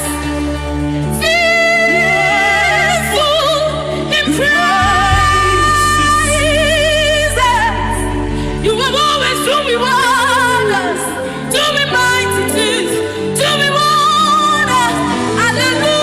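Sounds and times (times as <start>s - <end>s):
held low chords: 4.6s - 10.5s.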